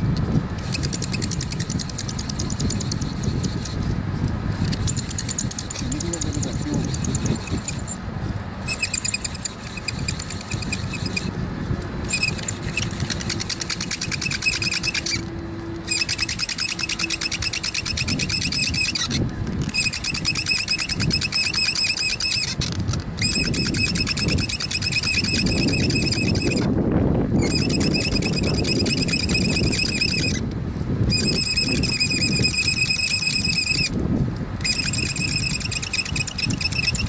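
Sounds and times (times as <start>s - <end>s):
palms rubbing spindle: 0.0s - 26.8s, 27.4s - 30.5s, 31.1s - 37.0s
fire drill spindle squeaking: 0.0s - 37.0s.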